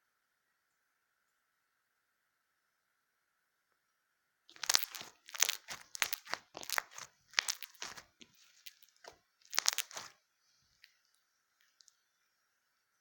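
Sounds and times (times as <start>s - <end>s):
crunchy slime crackling: 4.5s - 12.0s.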